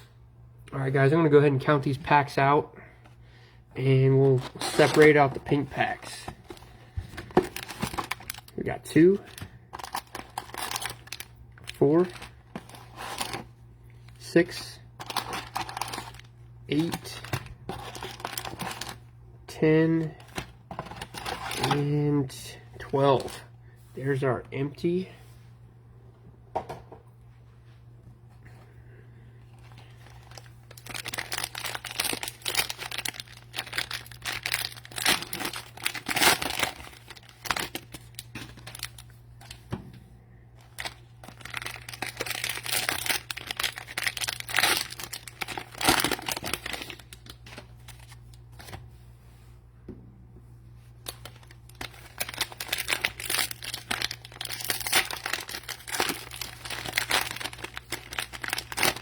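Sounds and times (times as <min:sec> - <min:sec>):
cellophane crinkling: 0:03.8 - 0:19.1, 0:20.0 - 0:21.9, 0:29.5 - 0:39.7, 0:40.6 - 0:48.8, 0:50.8 - 0:59.0.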